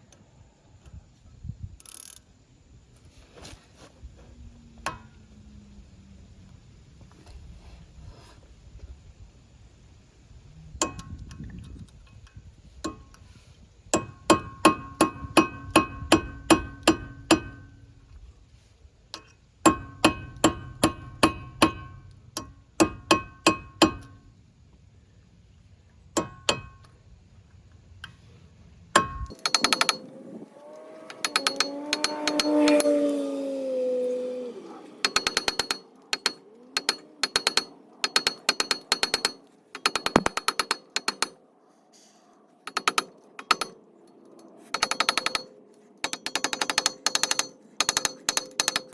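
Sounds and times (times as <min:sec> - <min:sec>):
hammer striking metal: 0:19.2 - 0:24.2, 0:26.2 - 0:26.9, 0:29.0 - 0:30.1, 0:31.1 - 0:32.9, 0:35.0 - 0:41.4, 0:44.8 - 0:48.9
fast metallic rattle: 0:29.0 - 0:30.5, 0:31.1 - 0:32.9, 0:35.0 - 0:41.4, 0:42.7 - 0:48.9.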